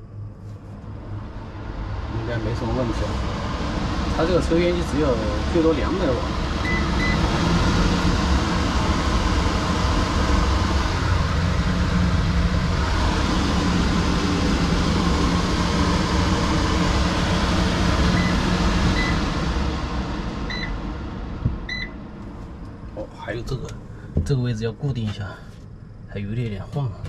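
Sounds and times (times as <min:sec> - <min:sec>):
range hood fan rushing air: 0:00.0 - 0:27.0
short beeps from control panel: 0:06.6 - 0:07.2, 0:20.5 - 0:20.7, 0:21.7 - 0:21.9.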